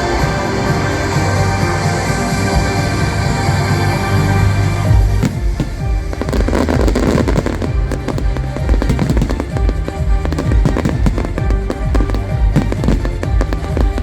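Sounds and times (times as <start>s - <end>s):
music playing: 0.0s - 14.0s
fireworks bangs and pops: 5.0s - 14.0s.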